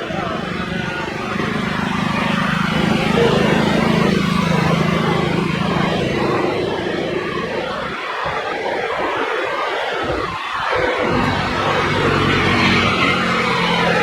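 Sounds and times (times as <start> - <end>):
jet engines passing: 0.0 - 14.0.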